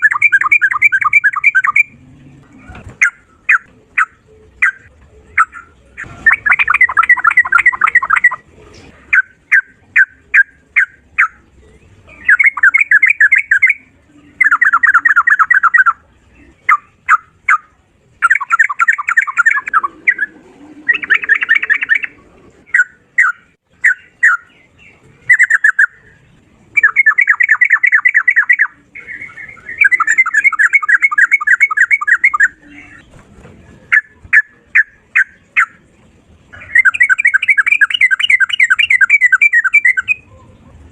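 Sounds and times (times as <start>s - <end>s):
bulbul singing: 0.0s - 8.5s, 9.1s - 33.1s, 33.9s - 40.7s.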